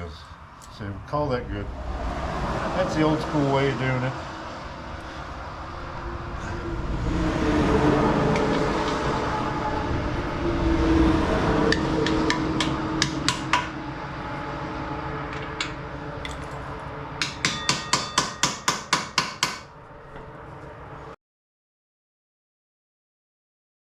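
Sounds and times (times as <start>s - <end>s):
road noise: 0.0s - 21.2s
ringing metal taps: 17.2s - 19.6s.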